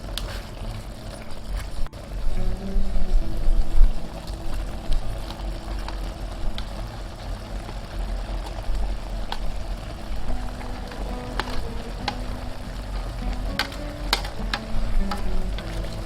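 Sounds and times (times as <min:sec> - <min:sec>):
food cooking in a pan: 0:00.0 - 0:16.0
utensil clicking against pan: 0:10.3 - 0:16.0.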